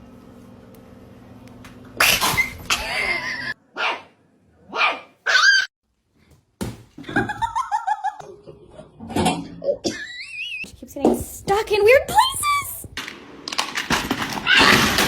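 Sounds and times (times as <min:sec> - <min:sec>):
dog barking and yipping: 0:03.8 - 0:04.1, 0:04.7 - 0:05.7.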